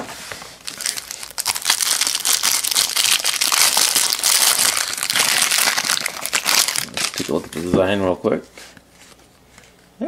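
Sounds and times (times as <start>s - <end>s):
plastic wrapper crinkling: 0.6s - 7.8s.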